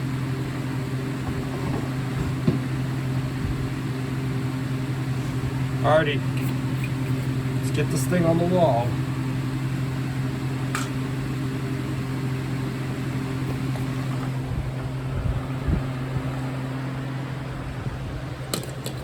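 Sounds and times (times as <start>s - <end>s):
steady low hum: 0.0s - 19.0s
dull knocks: 1.2s - 2.9s.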